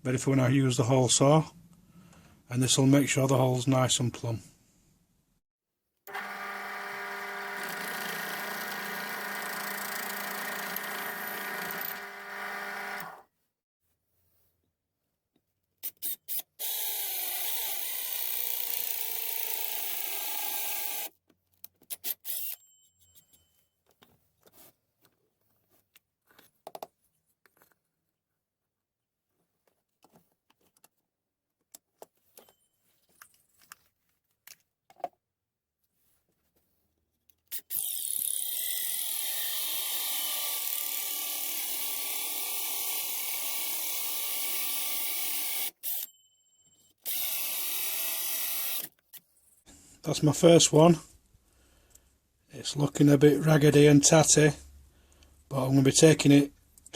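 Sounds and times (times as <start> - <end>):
pillar drill cutting wood: 6.1 - 13.2, 16.4 - 21.1, 37.6 - 46.1, 47.0 - 49.0
clicks and knocks of handling: 23.2 - 27.9, 29.4 - 31.0, 31.6 - 35.2.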